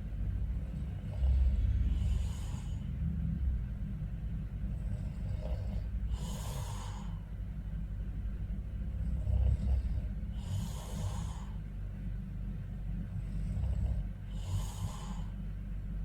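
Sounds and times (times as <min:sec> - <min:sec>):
heavy hissing breaths: 0:00.0 - 0:03.2, 0:04.6 - 0:07.5, 0:08.8 - 0:12.0, 0:13.0 - 0:15.8
faint snore: 0:00.5 - 0:03.0, 0:04.7 - 0:07.2, 0:08.9 - 0:11.6, 0:13.0 - 0:15.4.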